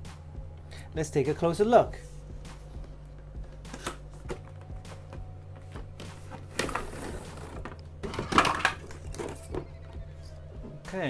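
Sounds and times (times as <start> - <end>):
packaging scraping rustle: 5.7 - 9.5.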